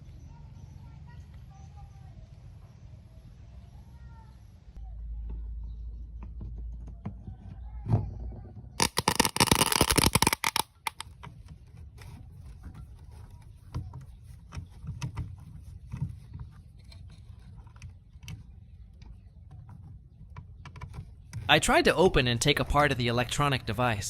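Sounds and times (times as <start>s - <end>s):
loud scraping rattle: 8.8s - 11.0s.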